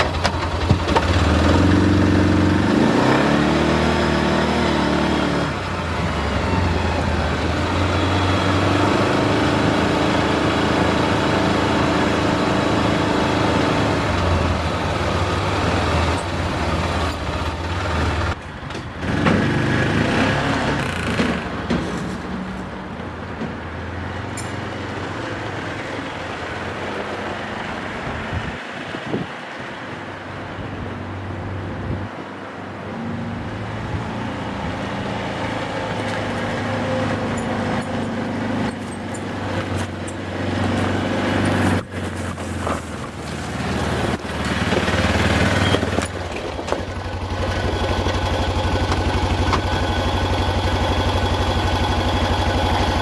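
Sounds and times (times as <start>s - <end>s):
utility vehicle engine running: 0.0s - 53.0s
knocks and rattles: 14.1s - 26.0s, 34.8s - 50.0s.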